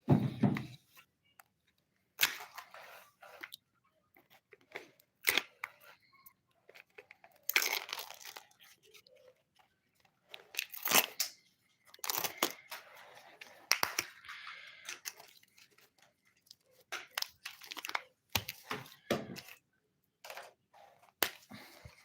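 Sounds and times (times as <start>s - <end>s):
plastic wrapper tearing and crinkling: 6.9s - 9.0s, 10.4s - 11.4s, 12.0s - 12.8s, 16.7s - 18.6s.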